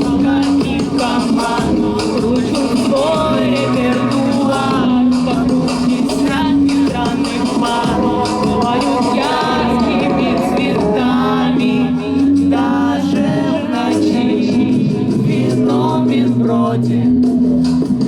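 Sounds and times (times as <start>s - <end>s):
live band playing: 0.0s - 12.7s
person singing: 0.0s - 17.2s
bass line: 0.0s - 18.0s
drums: 0.0s - 18.0s.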